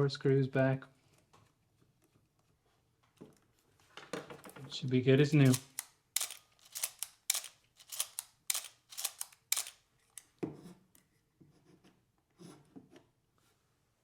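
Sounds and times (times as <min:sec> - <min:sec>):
screwdriver clicks and scrapes: 0:05.4 - 0:10.4.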